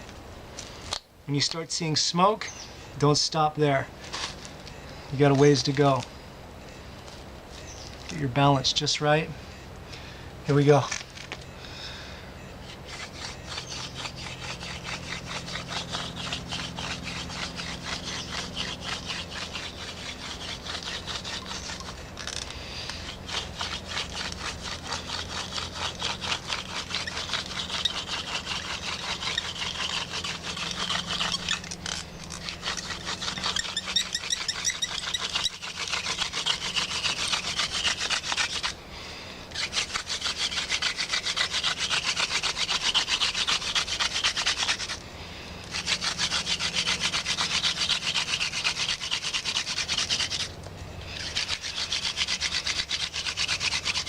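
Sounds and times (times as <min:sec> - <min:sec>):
spindle scratchy rubbing in socket: 0:12.6 - 0:38.8, 0:39.5 - 0:45.0, 0:45.6 - 0:54.0.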